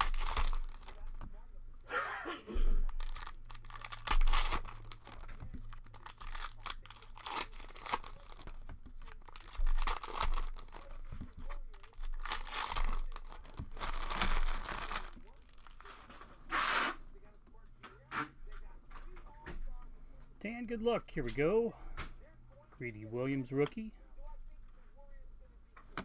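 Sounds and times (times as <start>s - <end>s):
plastic wrapping tearing and crinkling: 0.0s - 1.4s, 2.6s - 17.0s.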